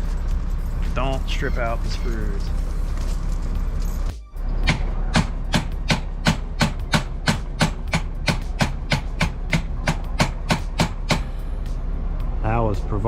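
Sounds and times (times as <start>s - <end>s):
hammer tapping: 4.6s - 11.3s.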